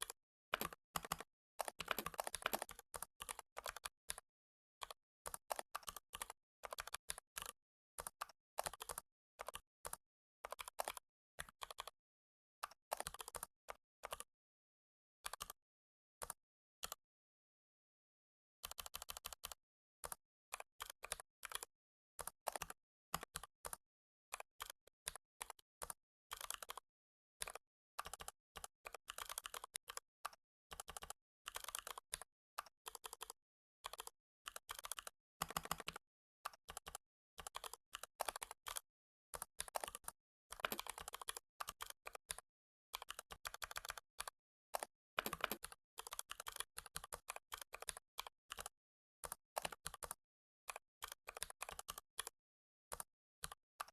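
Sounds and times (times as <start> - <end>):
computer keyboard typing: 0.0 - 4.2, 4.8 - 11.0, 12.9 - 13.5, 18.7 - 20.2, 25.4 - 25.6, 26.3 - 26.8, 28.0 - 30.0, 30.7 - 32.3, 32.9 - 38.8, 39.4 - 44.1, 44.7 - 48.7, 51.3 - 52.4.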